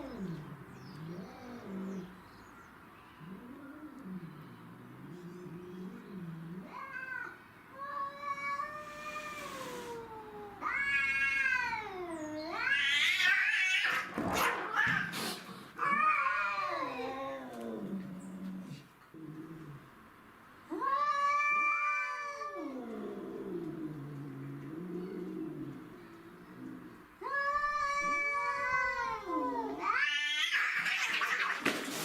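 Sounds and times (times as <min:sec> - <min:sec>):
cats yowling: 0:05.9 - 0:18.1, 0:20.7 - 0:31.9.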